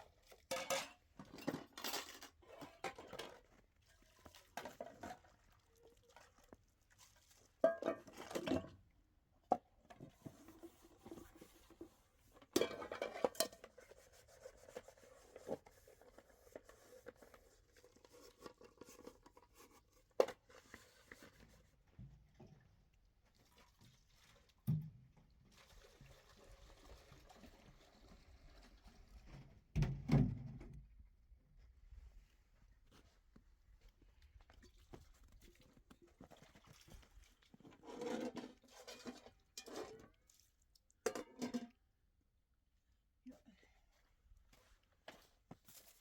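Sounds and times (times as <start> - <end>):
household objects clinking and scraping: 37.6 - 40.1.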